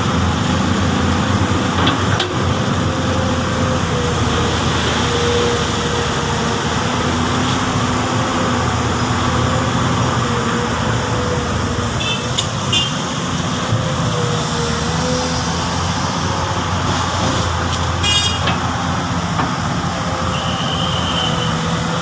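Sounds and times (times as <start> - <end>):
excavator diesel engine: 0.0 - 22.0.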